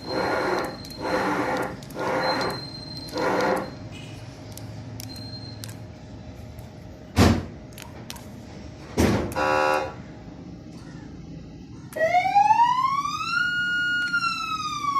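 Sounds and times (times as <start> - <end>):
short horn-like siren buzz: 9.4 - 10.0.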